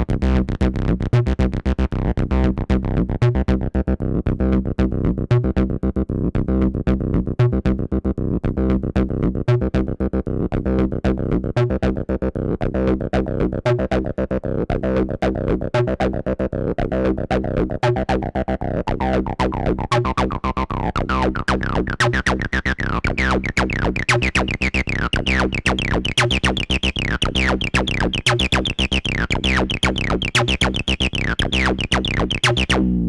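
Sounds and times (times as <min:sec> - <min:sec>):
acid bass synthesizer line: 0:00.0 - 0:33.0.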